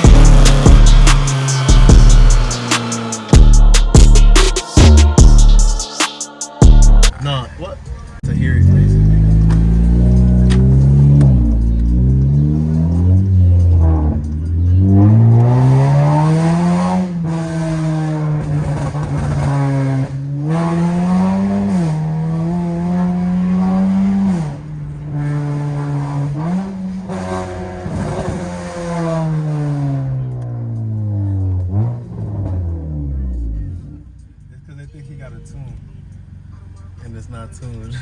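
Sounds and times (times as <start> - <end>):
car exhaust engine revving: 0.0 - 5.8, 8.2 - 30.2.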